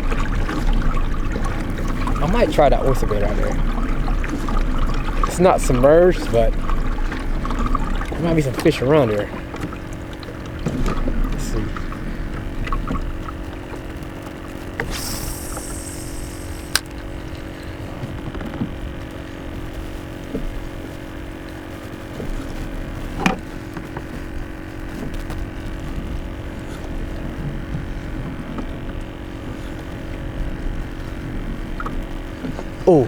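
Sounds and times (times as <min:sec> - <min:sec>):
steady hum: 0:00.0 - 0:18.0
fishing line whooshing off reel: 0:14.8 - 0:17.0
reel bail clicking shut: 0:14.8 - 0:17.0.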